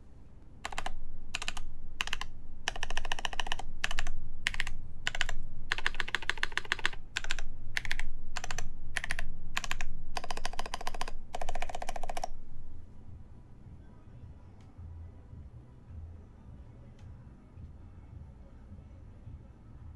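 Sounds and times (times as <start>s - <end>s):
mechanical keyboard typing: 0.6s - 12.4s.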